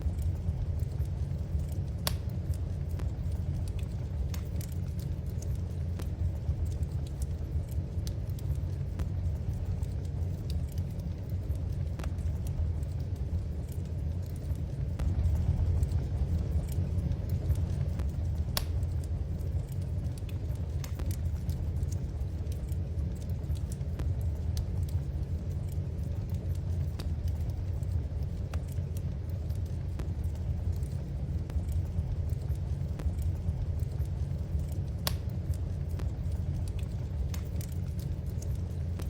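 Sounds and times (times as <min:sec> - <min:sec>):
wood fire crackling and popping: 0:00.0 - 0:39.0.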